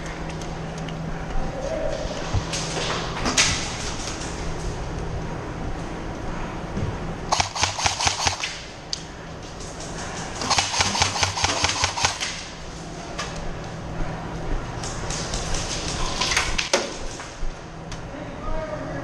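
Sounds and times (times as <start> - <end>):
airsoft gun bursts: 7.3 - 8.6, 10.4 - 12.5.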